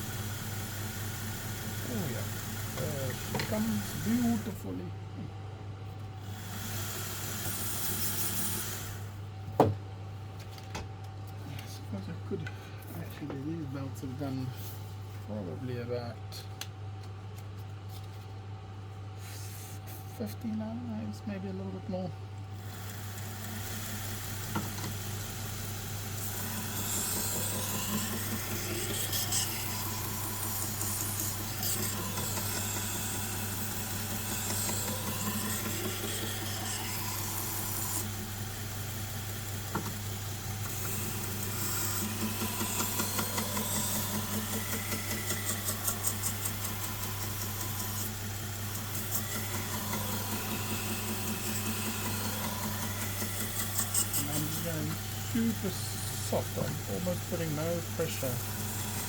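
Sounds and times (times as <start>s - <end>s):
belt grinder motor humming: 0.0s - 4.8s, 6.2s - 9.2s, 22.6s - 59.0s
knife rasping on abrasive belt: 48.8s - 56.3s.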